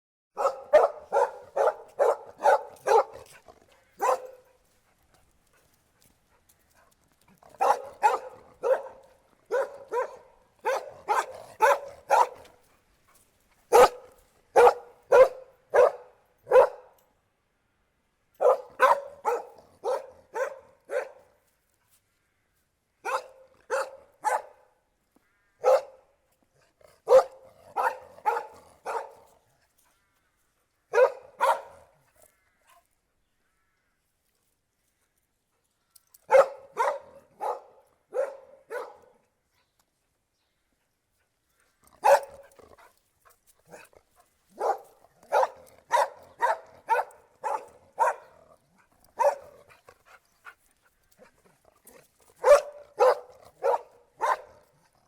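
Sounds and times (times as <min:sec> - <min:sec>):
dog barking: 0:00.4 - 0:03.4, 0:04.0 - 0:04.6, 0:07.6 - 0:12.6, 0:13.7 - 0:17.0, 0:18.4 - 0:21.3, 0:23.0 - 0:24.7, 0:25.6 - 0:26.1, 0:27.0 - 0:29.4, 0:30.9 - 0:32.0, 0:36.3 - 0:39.2, 0:42.0 - 0:42.5, 0:44.5 - 0:48.4, 0:49.2 - 0:49.6, 0:52.4 - 0:54.7.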